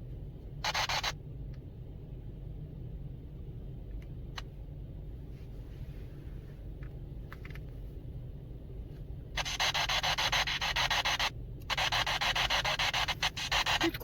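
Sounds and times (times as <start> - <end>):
low steady rumble: 0.0 - 14.0
pulsing electronic static hiss: 9.4 - 14.0.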